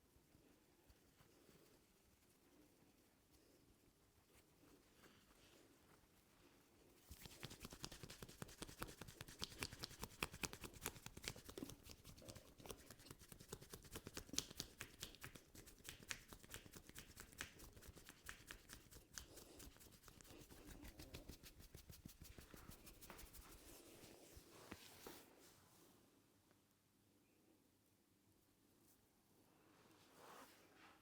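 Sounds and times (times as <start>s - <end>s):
fingers rubbing hair and scalp: 7.1s - 25.2s.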